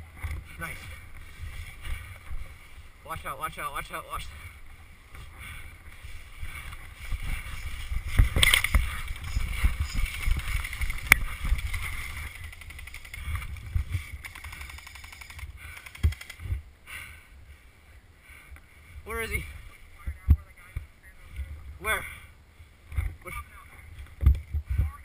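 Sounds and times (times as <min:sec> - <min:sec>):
low thumps and rustling: 0:04.5 - 0:14.6.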